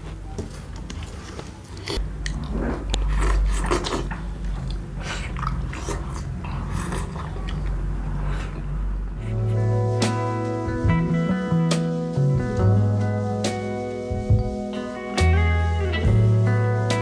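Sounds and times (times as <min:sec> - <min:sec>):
person chewing crunchy food: 0:01.0 - 0:08.6.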